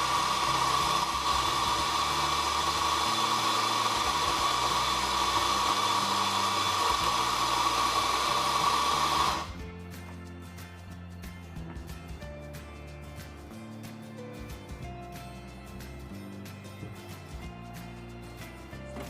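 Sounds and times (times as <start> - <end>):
electric coffee grinder running: 0.0 - 9.6.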